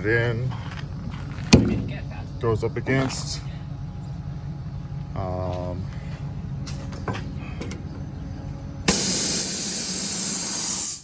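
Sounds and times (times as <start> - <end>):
compressed air rushing: 8.9 - 11.0.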